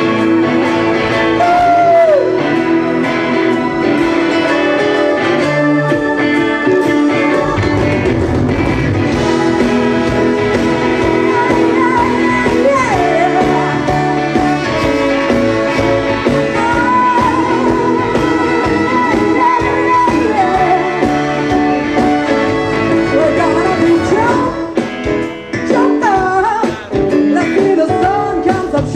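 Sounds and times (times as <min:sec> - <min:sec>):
live band playing soul-pop: 0:00.0 - 0:28.9
person singing with vibrato: 0:09.2 - 0:24.8, 0:25.6 - 0:28.9.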